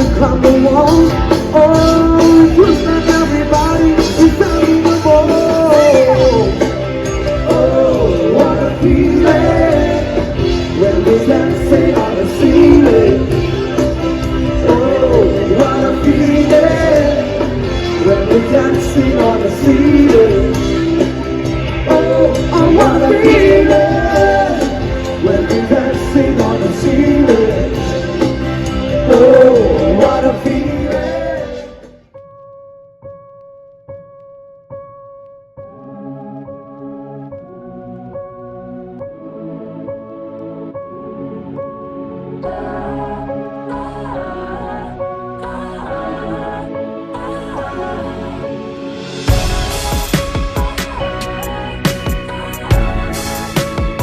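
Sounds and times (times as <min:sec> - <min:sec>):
pop-rock song with singer: 0:00.0 - 0:32.1.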